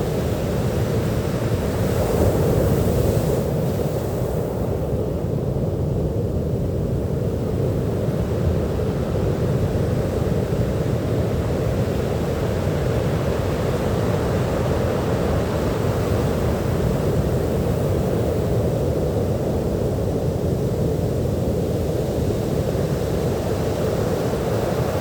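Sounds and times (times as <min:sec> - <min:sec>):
ocean surf rumble: 0:10.8 - 0:25.0.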